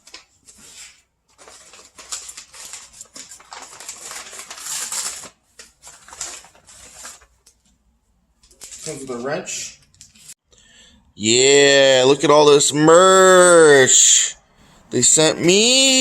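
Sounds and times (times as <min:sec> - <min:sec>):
packaging rustling: 0:00.0 - 0:07.8, 0:08.4 - 0:10.4.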